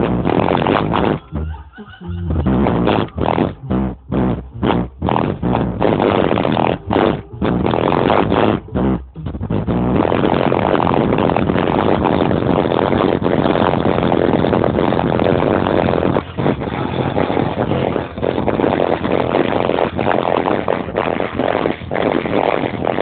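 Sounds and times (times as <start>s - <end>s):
bass-heavy music through subwoofer: 0.0s - 23.0s.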